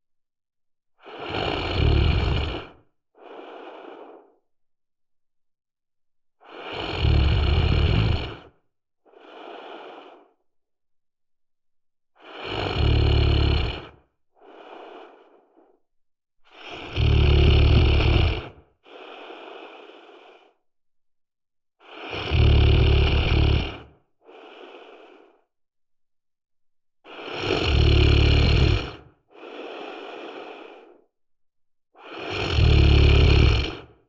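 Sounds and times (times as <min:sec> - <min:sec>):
person snoring: 0:01.0 - 0:04.4, 0:06.4 - 0:10.4, 0:12.2 - 0:15.6, 0:16.5 - 0:20.6, 0:21.8 - 0:25.4, 0:27.1 - 0:31.0, 0:32.0 - 0:34.0
quiet out-breath: 0:02.2 - 0:04.5, 0:08.2 - 0:10.5, 0:12.2 - 0:15.8, 0:17.8 - 0:20.7, 0:21.8 - 0:25.5, 0:27.1 - 0:31.1.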